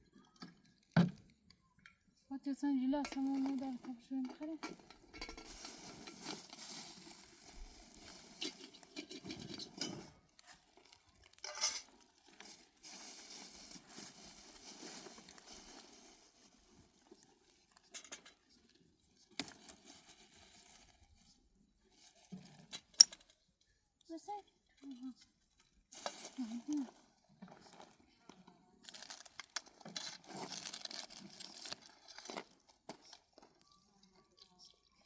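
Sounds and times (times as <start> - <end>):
rustling and crinkling handling: 2.4 - 23.4, 24.9 - 35.0.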